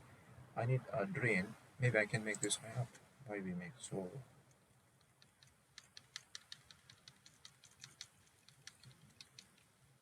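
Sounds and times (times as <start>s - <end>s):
computer mouse and keyboard clicks: 5.0s - 9.7s.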